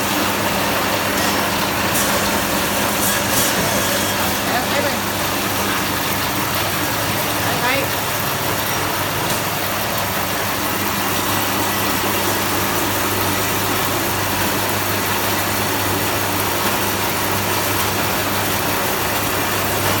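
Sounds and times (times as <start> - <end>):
bait cutting machine humming: 0.0 - 20.0
machine chopping whir: 1.2 - 6.6.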